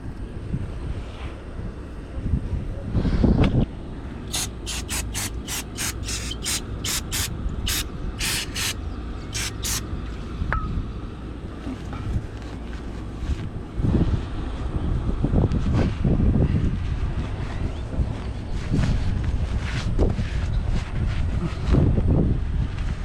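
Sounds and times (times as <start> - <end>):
hand ratchet rasping buzzes: 4.3 - 8.8, 9.4 - 9.8.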